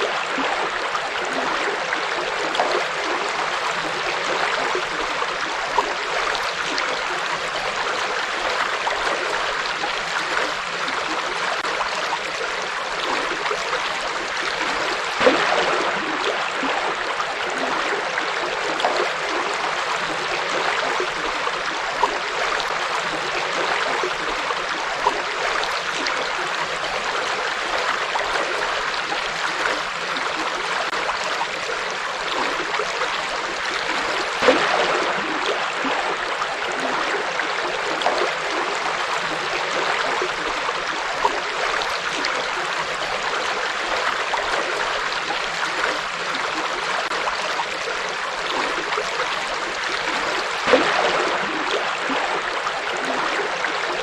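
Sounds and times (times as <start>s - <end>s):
river water rushing: 0.0s - 25.3s
water splashes: 0.0s - 54.0s.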